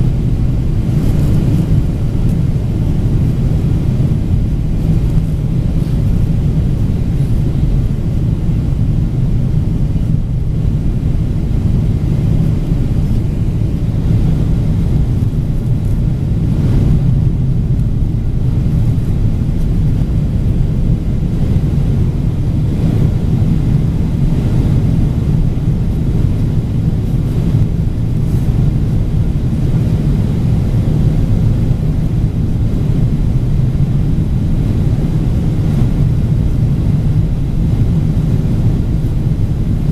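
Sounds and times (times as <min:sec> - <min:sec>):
airliner cabin engine drone: 0:00.0 - 0:39.9.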